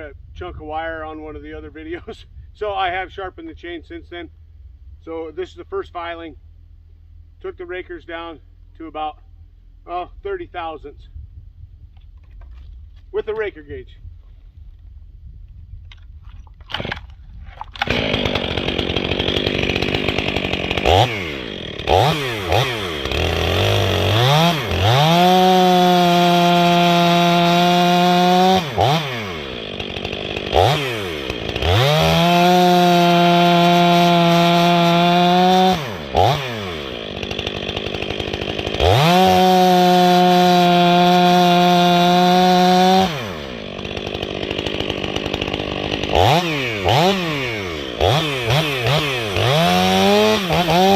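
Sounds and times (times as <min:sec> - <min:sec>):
chainsaw cutting wood: 0:16.6 - 0:50.9.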